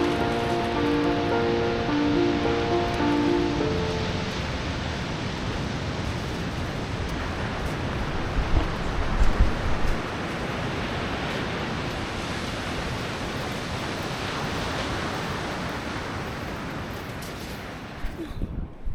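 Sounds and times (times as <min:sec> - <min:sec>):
sea surf on beach: 0:00.0 - 0:18.0
wind gusting on microphone: 0:03.9 - 0:17.0.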